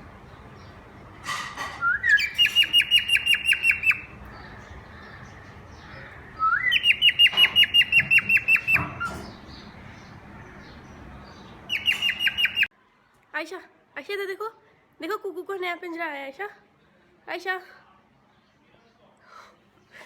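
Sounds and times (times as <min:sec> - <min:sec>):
parrot squawking: 0:01.9 - 0:09.9, 0:11.7 - 0:12.7.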